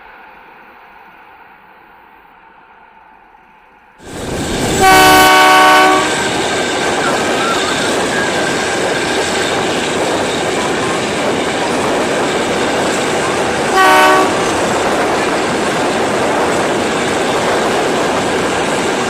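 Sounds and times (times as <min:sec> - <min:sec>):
train rushing past: 0:00.0 - 0:19.0
train horn blast: 0:04.8 - 0:06.3, 0:13.7 - 0:14.6.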